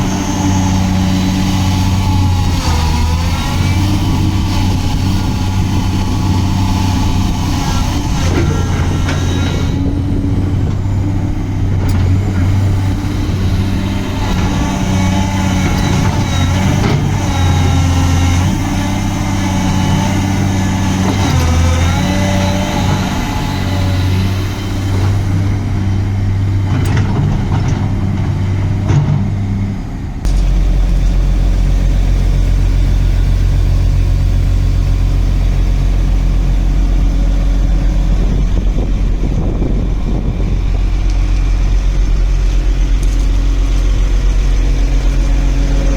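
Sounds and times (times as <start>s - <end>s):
excavator diesel engine running: 0.0s - 45.9s
wavering whine: 30.3s - 45.9s.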